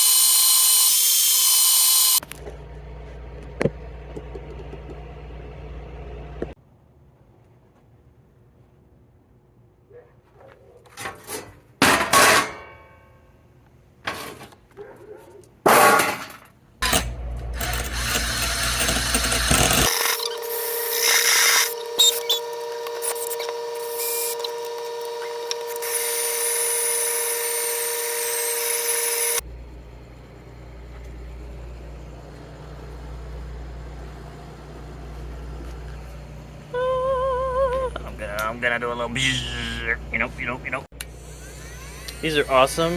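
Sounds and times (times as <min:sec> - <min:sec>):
power tool whining: 0:00.0 - 0:02.4, 0:16.8 - 0:29.4, 0:41.0 - 0:42.9
sharp knocks and clicks: 0:03.5 - 0:05.1.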